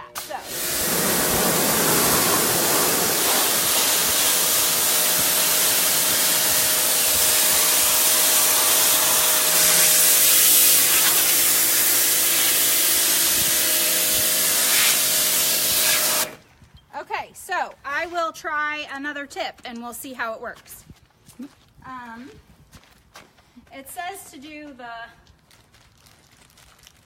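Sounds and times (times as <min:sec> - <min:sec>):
pressure washer water jet hissing: 0:00.0 - 0:16.4
pump motor whine: 0:00.2 - 0:16.5.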